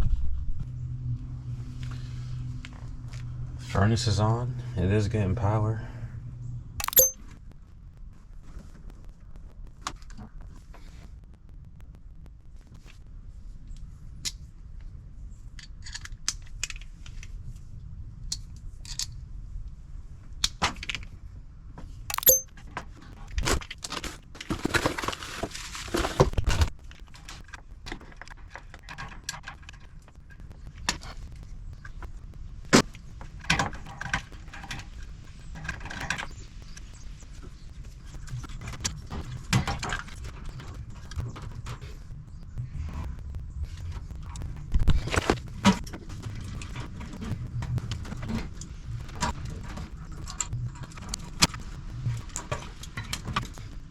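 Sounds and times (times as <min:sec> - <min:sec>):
metallic clicks and rattles of tools: 0:06.8 - 0:07.2, 0:22.1 - 0:22.5
scraping rustle: 0:23.9 - 0:26.7
low steady hum: 0:24.0 - 0:53.9.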